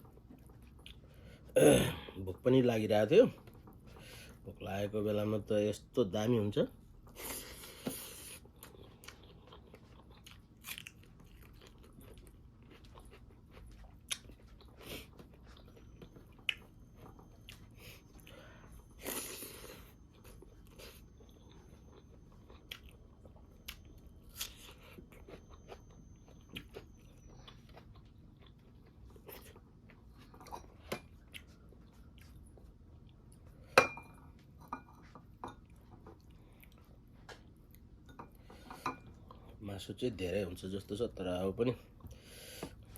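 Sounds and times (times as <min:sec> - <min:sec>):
chewing and crunching: 0:00.0 - 0:01.5, 0:07.0 - 0:39.7.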